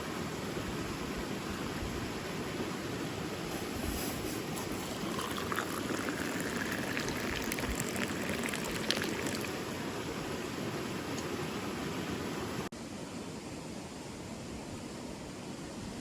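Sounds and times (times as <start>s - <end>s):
liquid pouring into a vessel: 3.6s - 9.6s.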